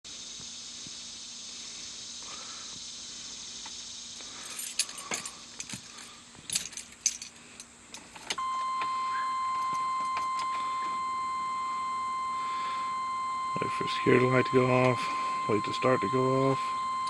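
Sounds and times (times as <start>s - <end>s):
car keys jangling and clicking: 4.5s - 11.0s
electronic warning tone: 8.4s - 17.0s.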